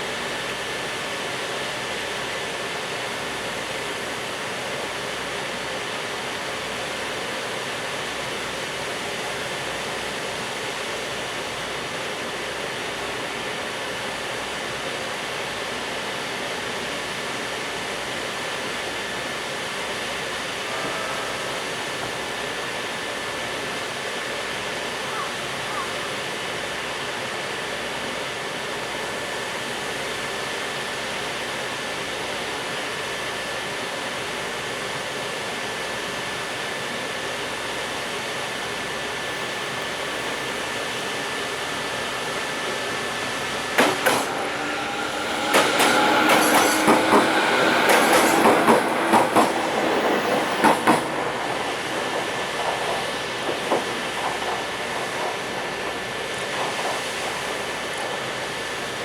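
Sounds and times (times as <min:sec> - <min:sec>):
freight train rumbling: 0:00.0 - 0:59.0
wheel clatter over rail joints: 0:42.6 - 0:59.0.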